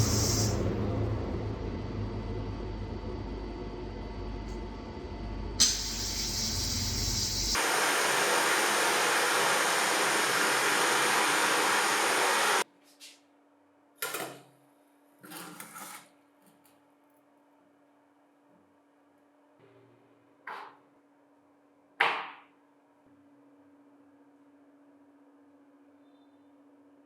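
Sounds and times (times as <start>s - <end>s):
power tool running abrasively: 0.0s - 0.6s, 5.6s - 12.6s.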